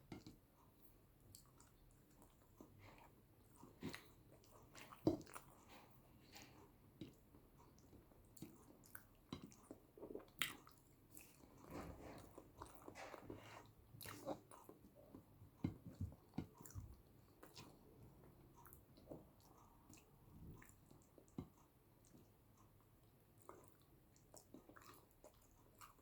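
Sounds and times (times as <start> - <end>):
chewing and biting food: 1.3 - 26.0.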